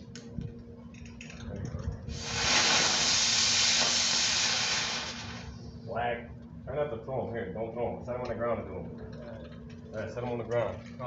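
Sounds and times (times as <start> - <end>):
spinner firework hissing: 2.1 - 5.8.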